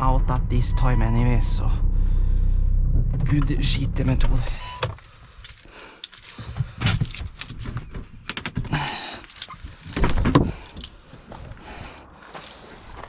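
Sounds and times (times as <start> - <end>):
car door opening and shutting: 3.0 - 11.0
rustling: 4.8 - 13.0.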